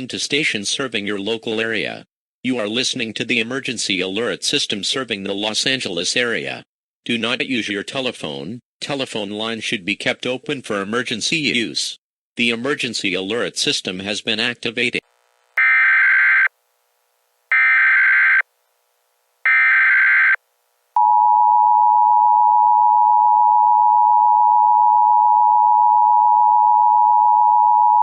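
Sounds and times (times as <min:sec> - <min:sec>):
two-tone attention signal: 0:15.6 - 0:16.5.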